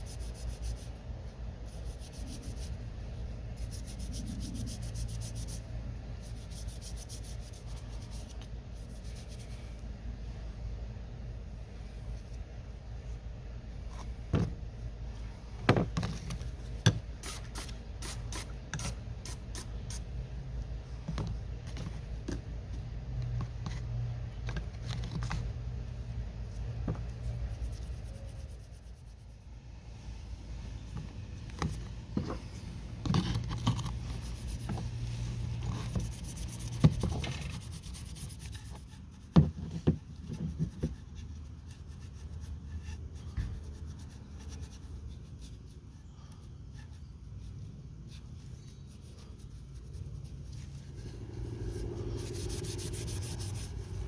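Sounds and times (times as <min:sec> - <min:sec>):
steady low hum: 0:00.0 - 0:54.0
rubbing and scraping metal parts: 0:30.9 - 0:45.9, 0:46.6 - 0:54.0.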